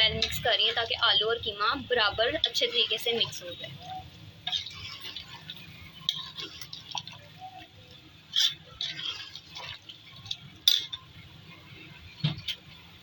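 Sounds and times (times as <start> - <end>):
spoon stirring in a pot: 0.0 - 13.0
spoon scraping and clinking pot: 2.4 - 7.6, 8.3 - 11.1.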